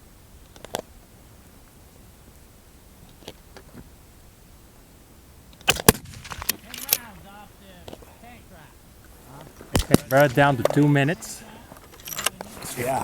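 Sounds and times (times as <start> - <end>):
rifle shot: 5.6 - 7.2, 9.7 - 10.6.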